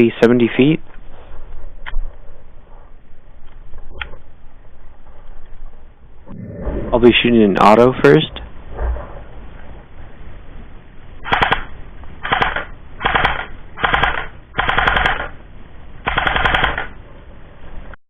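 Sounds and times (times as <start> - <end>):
airsoft rifle firing bursts: 11.3 - 15.3, 16.1 - 16.9.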